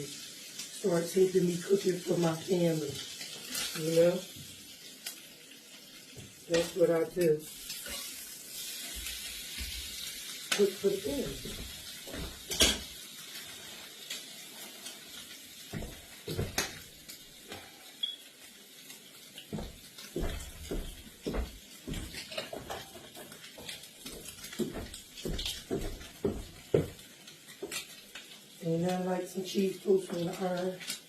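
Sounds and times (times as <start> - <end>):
pans dishes and utensils clinking: 10.6 - 13.0, 19.6 - 27.0.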